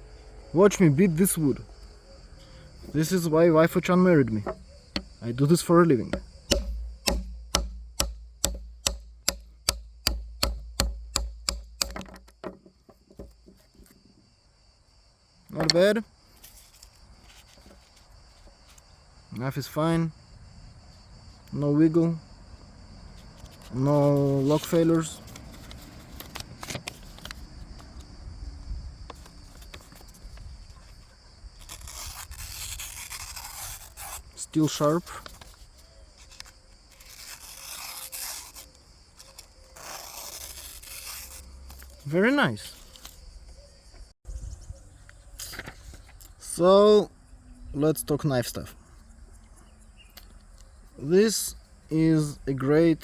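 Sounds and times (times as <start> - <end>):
baton striking knife through wood: 4.2 - 14.0.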